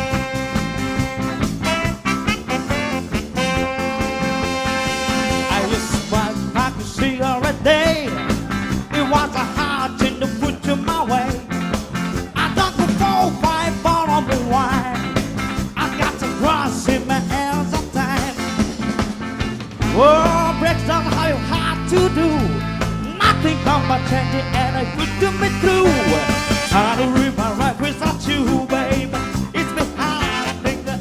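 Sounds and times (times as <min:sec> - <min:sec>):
held horn note: 0:00.0 - 0:06.2, 0:19.8 - 0:27.2, 0:30.2 - 0:31.0
band playing up-tempo ska rock: 0:00.0 - 0:31.0.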